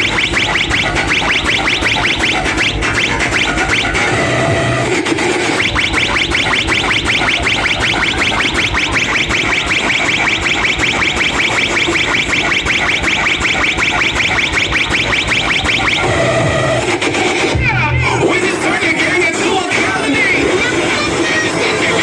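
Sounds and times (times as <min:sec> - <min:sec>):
electronic chirp tones: 0:05.6 - 0:16.6.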